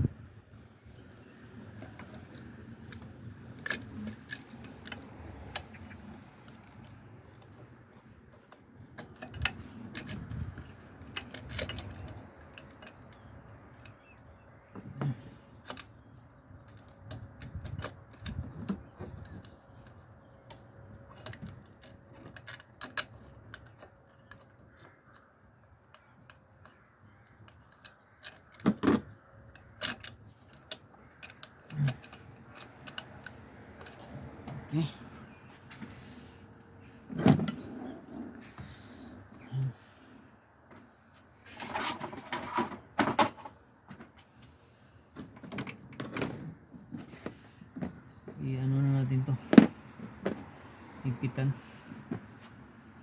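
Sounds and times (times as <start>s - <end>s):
tools clicking and tapping on parts: 1.8s - 16.0s, 16.6s - 25.2s, 25.9s - 35.0s.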